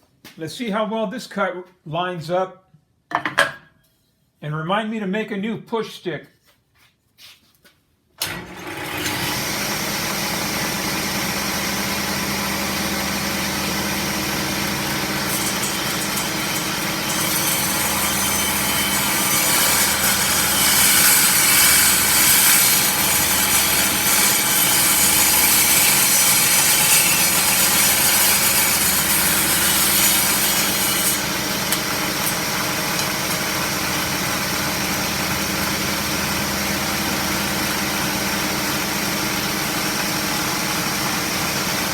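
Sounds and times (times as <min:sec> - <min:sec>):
table saw motor humming: 0:08.2 - 0:41.9
saw blade cutting wood: 0:12.8 - 0:38.0.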